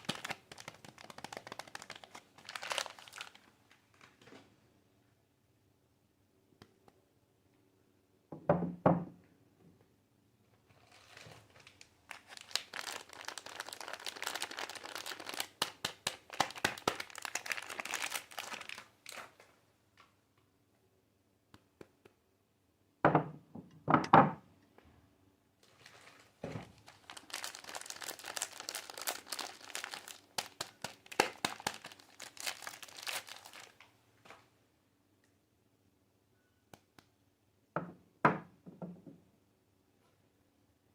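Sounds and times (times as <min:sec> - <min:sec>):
wrappers crinkling and tearing: 0:00.0 - 0:03.5, 0:10.7 - 0:19.4, 0:25.6 - 0:33.8.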